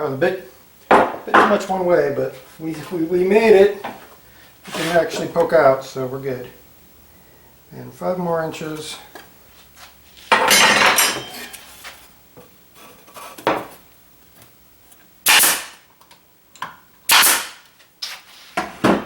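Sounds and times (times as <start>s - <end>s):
nail gun firing: 15.2s - 15.8s, 17.1s - 17.7s.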